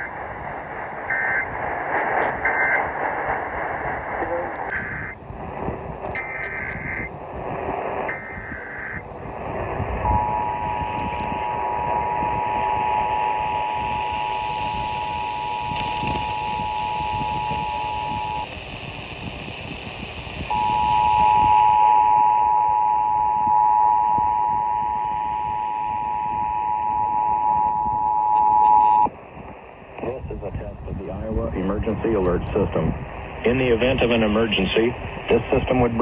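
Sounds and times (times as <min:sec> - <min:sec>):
radio hiss: 0:00.0 - 0:36.0
two-tone attention signal: 0:10.0 - 0:18.5, 0:20.5 - 0:29.1.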